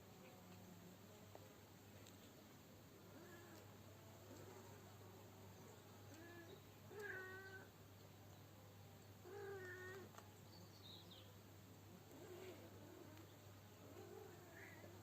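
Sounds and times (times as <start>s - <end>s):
cat meowing faintly: 3.0s - 3.6s, 6.2s - 7.7s, 9.2s - 10.1s, 13.9s - 15.0s.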